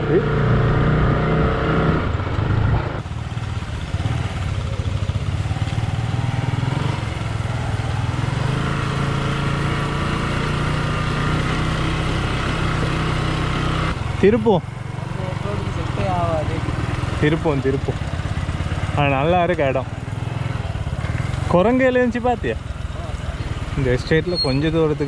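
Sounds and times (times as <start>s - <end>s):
motorcycle engine running: 0.0s - 25.0s.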